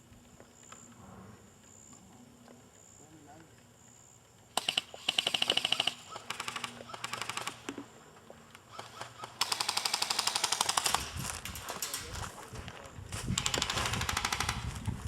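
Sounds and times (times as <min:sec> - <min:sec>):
airsoft guns firing bursts: 0:04.5 - 0:07.8, 0:08.7 - 0:12.0, 0:13.3 - 0:14.7.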